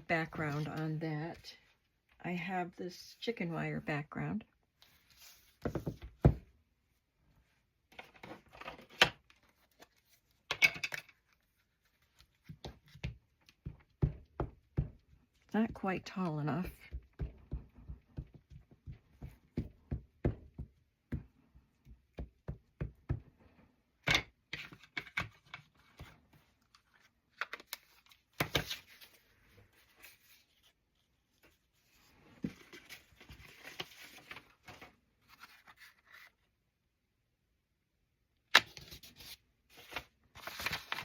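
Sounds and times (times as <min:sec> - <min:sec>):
paper rustling: 0:08.0 - 0:10.4, 0:11.1 - 0:13.6, 0:25.7 - 0:36.5, 0:38.7 - 0:41.0.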